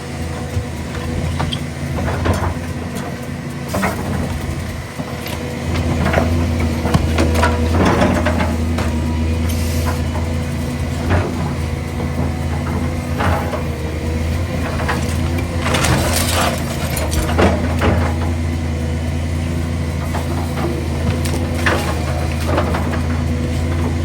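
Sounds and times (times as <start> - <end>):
heavy diesel engine running: 0.0 - 24.0
timber and debris crashing: 14.7 - 18.1.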